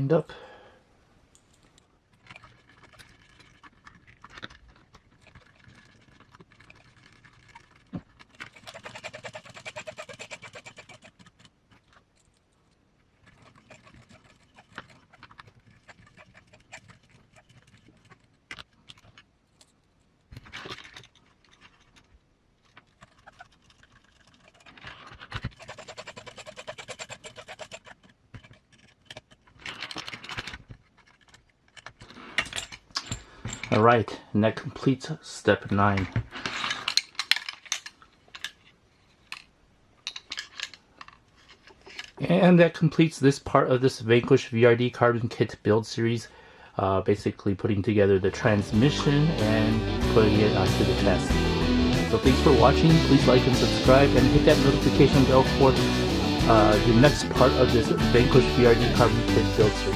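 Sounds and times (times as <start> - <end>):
small parts clicking and tapping: 1.3 - 33.8, 36.0 - 42.2.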